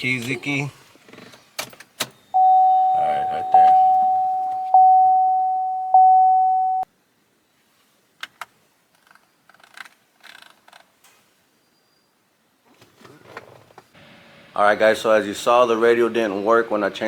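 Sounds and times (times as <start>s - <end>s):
dashboard warning chime: 2.4s - 6.9s.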